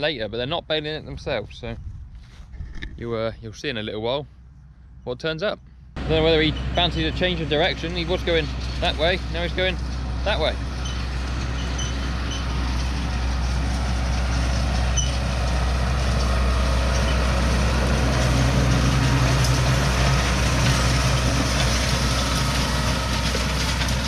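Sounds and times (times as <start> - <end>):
tractor engine running: 5.6 - 24.0.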